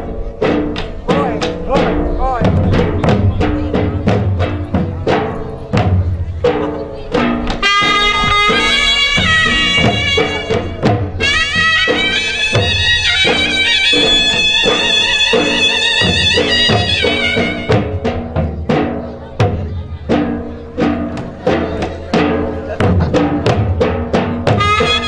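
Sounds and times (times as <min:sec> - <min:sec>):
regular drum beats: 0:00.0 - 0:25.0.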